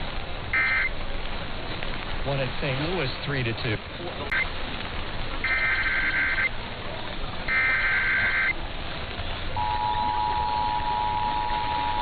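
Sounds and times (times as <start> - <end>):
warbling data burst: 5.4 - 6.5, 7.5 - 8.5
two-tone alert signal: 9.6 - 12.0.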